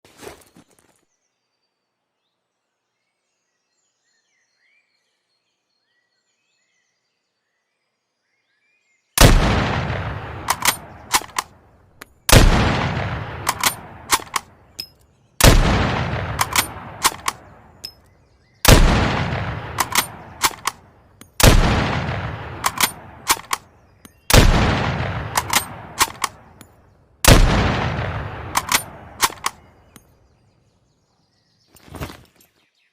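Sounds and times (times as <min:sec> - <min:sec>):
rifle shots echoing: 0:09.2 - 0:11.5, 0:12.3 - 0:14.6, 0:15.4 - 0:17.9, 0:18.6 - 0:23.7, 0:24.3 - 0:26.6, 0:27.2 - 0:30.0
metallic rifle bolt clicks: 0:10.4 - 0:12.2, 0:13.4 - 0:15.1, 0:16.3 - 0:18.1, 0:19.6 - 0:21.6, 0:22.6 - 0:24.5, 0:25.2 - 0:27.4, 0:28.4 - 0:30.1.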